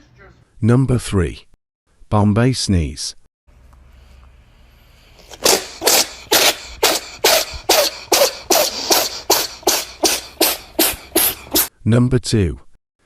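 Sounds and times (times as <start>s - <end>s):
person sneezing: 5.3s - 11.7s.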